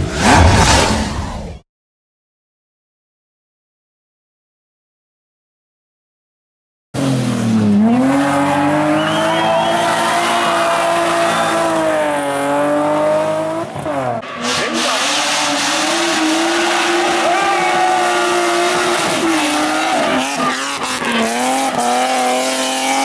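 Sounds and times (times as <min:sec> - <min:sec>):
race car engine at high revs: 0:07.0 - 0:23.0.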